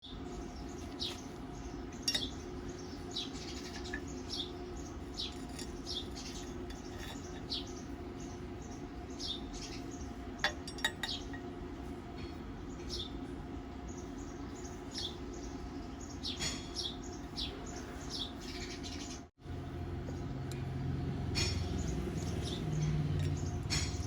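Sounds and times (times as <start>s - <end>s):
small bird chirping: 0.0s - 10.2s, 13.9s - 19.3s, 21.4s - 24.0s
steady low hum: 0.0s - 24.0s.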